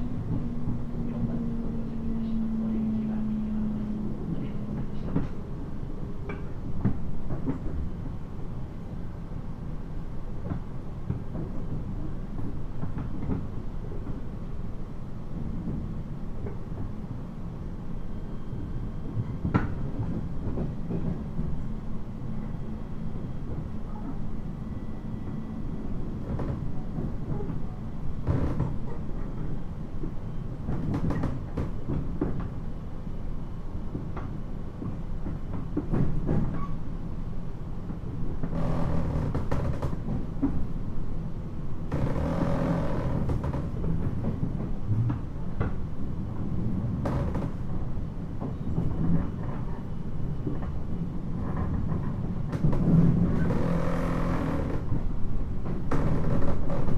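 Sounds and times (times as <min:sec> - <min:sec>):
train wheels rumbling on rail: 0:00.0 - 0:56.9.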